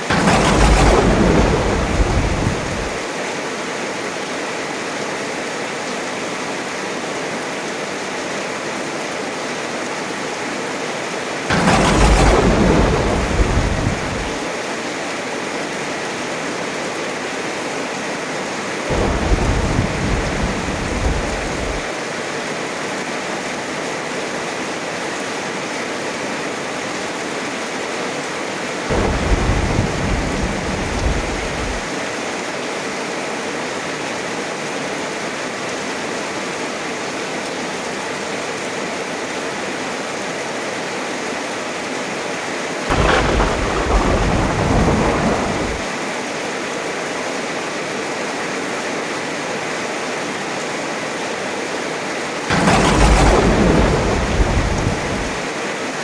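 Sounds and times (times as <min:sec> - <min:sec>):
thunder claps rumbling: 0:00.0 - 0:03.1, 0:11.5 - 0:14.5, 0:18.9 - 0:21.9, 0:28.9 - 0:31.9, 0:42.9 - 0:46.0, 0:52.5 - 0:55.5
heavy rain falling: 0:00.0 - 0:03.6, 0:10.8 - 0:16.8, 0:18.5 - 0:22.4, 0:28.8 - 0:32.3, 0:42.9 - 0:46.7, 0:51.6 - 0:56.0.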